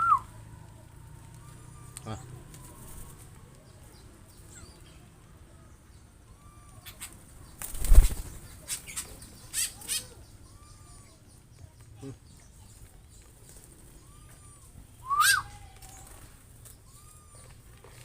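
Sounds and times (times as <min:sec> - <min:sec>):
faint bird calls: 0:01.3 - 0:12.7, 0:13.6 - 0:18.0
birds flapping wings: 0:02.2 - 0:03.5, 0:07.0 - 0:09.2, 0:15.1 - 0:18.0.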